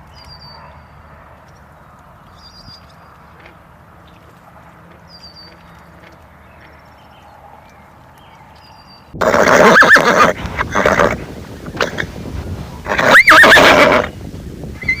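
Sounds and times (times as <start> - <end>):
horse neighing loudly: 9.2 - 11.2, 12.8 - 14.1.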